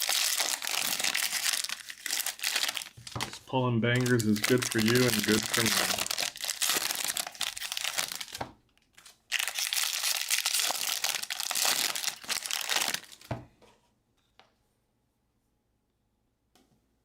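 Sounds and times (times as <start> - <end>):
card pack wrappers crinkling: 0.0 - 8.4, 9.0 - 13.3.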